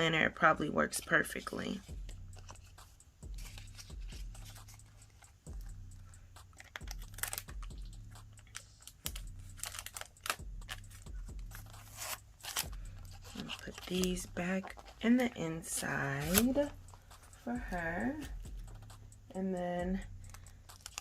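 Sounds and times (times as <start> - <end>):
packaging crinkling: 6.4 - 7.8, 8.4 - 17.4, 20.3 - 21.0.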